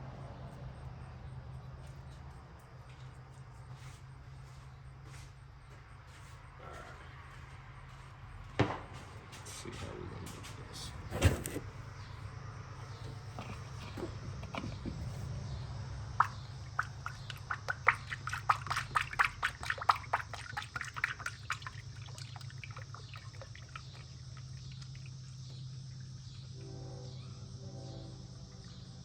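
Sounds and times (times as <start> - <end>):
oil glugging from a jug: 11.0 - 11.9, 12.9 - 15.3, 16.1 - 26.2.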